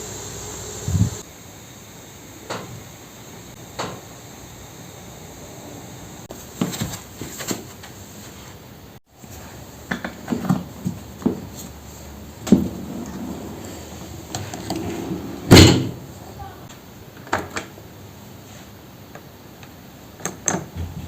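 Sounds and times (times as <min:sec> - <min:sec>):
kitchen items knocking and clattering: 0:09.8 - 0:11.6, 0:15.5 - 0:16.0.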